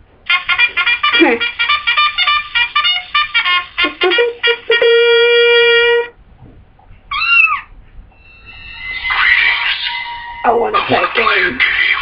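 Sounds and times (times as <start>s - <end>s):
brass-like tune of short notes: 0.3s - 6.1s
meow-like cry: 7.1s - 7.7s.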